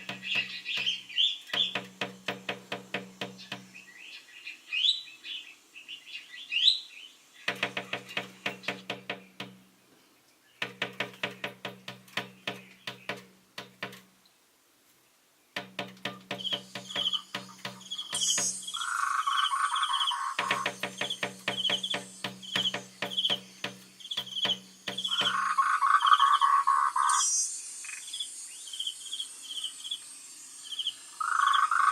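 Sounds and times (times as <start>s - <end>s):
bird tapping bill on glass: 0.0s - 3.8s, 7.5s - 9.8s, 10.6s - 14.1s, 15.6s - 18.9s, 20.3s - 25.5s
high trilled bird calls: 0.0s - 4.2s, 15.6s - 29.7s, 30.7s - 31.9s
steady mid-pitched sound: 20.4s - 25.5s.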